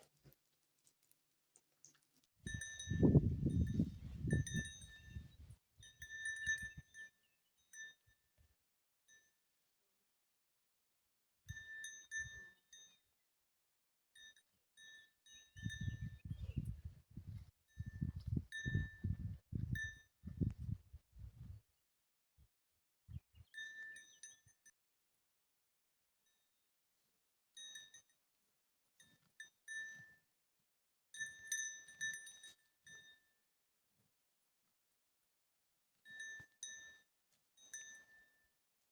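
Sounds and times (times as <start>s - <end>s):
small metal bell jingling: 2.5s - 7.1s
small metal bell clinking: 2.5s - 8.2s, 17.7s - 19.2s, 27.6s - 28.2s, 31.2s - 33.4s, 36.1s - 38.5s.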